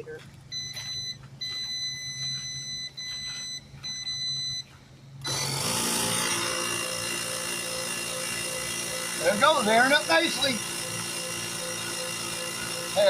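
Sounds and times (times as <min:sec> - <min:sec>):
high electronic beeps: 0:00.5 - 0:05.4, 0:06.9 - 0:13.0
portable air compressor running: 0:05.2 - 0:13.0.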